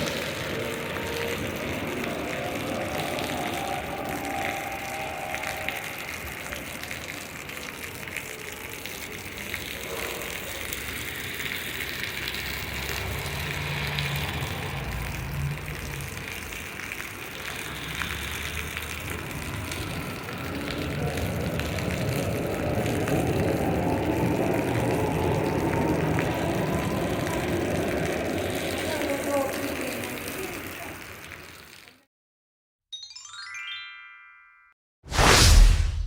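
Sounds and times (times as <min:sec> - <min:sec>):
rain falling and splashing: 0:00.0 - 0:32.1
vehicle engine approaching: 0:11.0 - 0:28.9.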